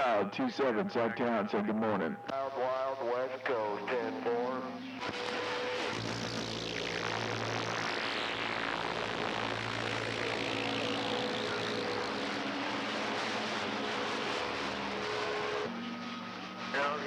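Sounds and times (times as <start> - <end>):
faint steady whistle tones: 0.0 - 8.5, 9.4 - 17.0
radio static hiss: 0.1 - 15.7.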